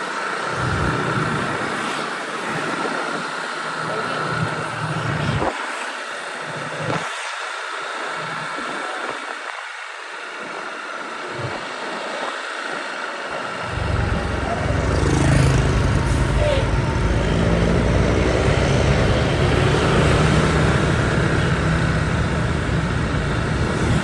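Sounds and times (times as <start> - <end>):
road traffic passing: 0.1 - 5.3, 13.3 - 24.0
heavy vehicle engine rumble: 13.3 - 24.0.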